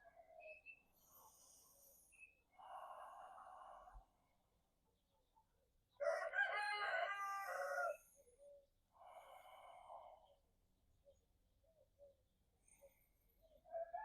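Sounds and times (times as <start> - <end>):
soft breathy sound: 0.0 - 5.4, 7.4 - 14.0
rooster crowing: 6.0 - 8.0.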